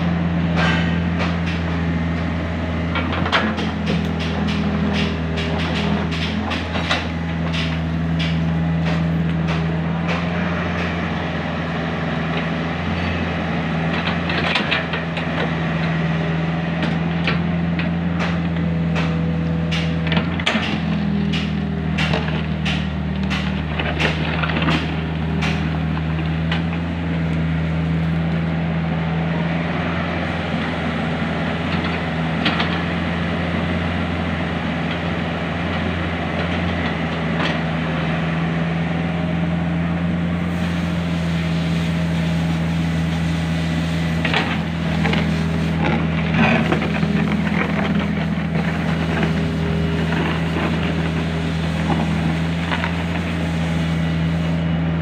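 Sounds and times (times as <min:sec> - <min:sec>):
excavator diesel engine running: 0:00.0 - 0:55.0
machine knocks and clanks: 0:00.5 - 0:01.7, 0:02.9 - 0:11.0, 0:16.8 - 0:26.8.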